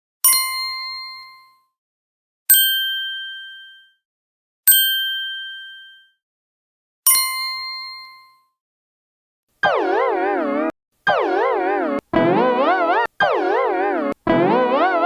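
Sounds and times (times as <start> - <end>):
wavering synthesizer tone: 9.6 - 15.0.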